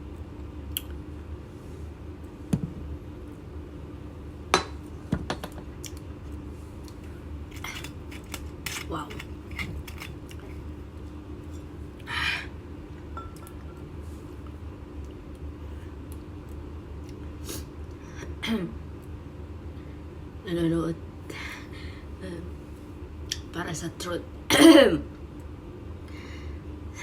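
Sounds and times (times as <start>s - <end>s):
steady low hum: 0.0s - 27.0s
spoon clinking against dishware: 13.2s - 13.6s.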